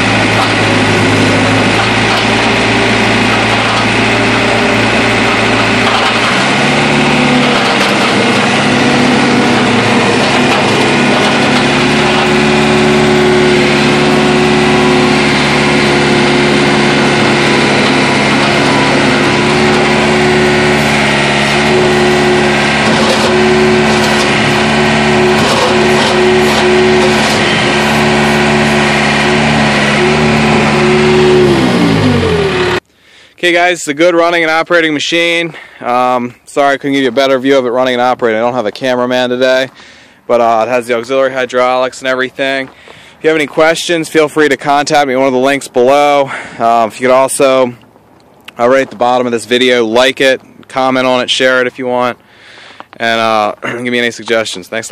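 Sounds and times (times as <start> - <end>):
diesel engine idling and revving: 0.0 - 54.9.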